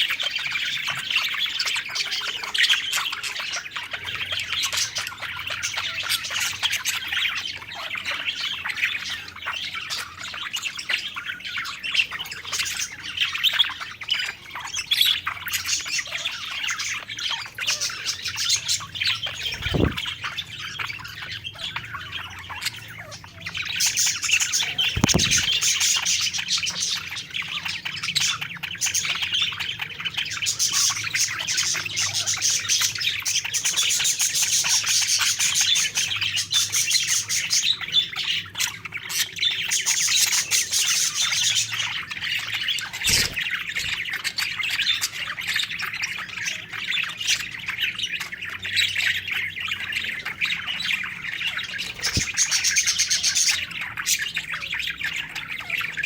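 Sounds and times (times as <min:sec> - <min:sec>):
budgerigars chirping and warbling: 0:00.0 - 0:56.0
sharp knock: 0:25.0 - 0:25.6.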